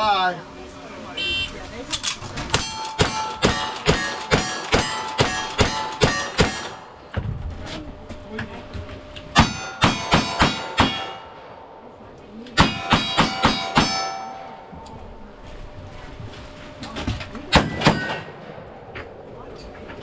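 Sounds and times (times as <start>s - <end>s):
rapid gunshots: 2.5s - 6.8s.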